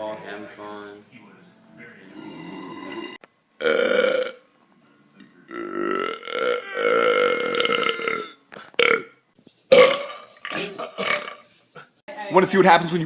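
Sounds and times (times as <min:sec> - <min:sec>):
person burping: 0:02.1 - 0:04.4, 0:05.5 - 0:11.5.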